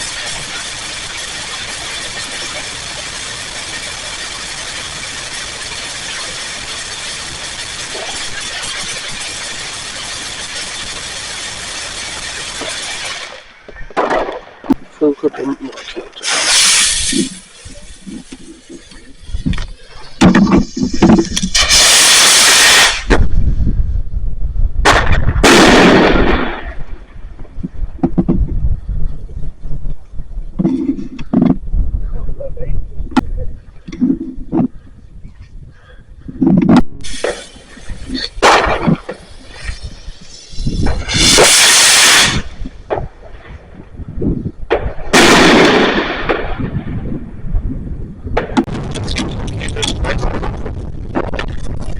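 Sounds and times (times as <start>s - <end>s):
fireworks bangs: 0.0s - 15.0s, 15.6s - 23.5s, 24.8s - 28.5s, 37.0s - 47.7s, 48.3s - 51.9s
scattered pops: 0.0s - 23.4s, 24.8s - 28.6s, 36.2s - 47.7s, 48.3s - 51.9s
fireworks hissing and crackling: 0.0s - 23.8s, 24.9s - 29.6s, 37.0s - 47.5s, 48.4s - 51.9s
low rumble: 42.4s - 51.9s.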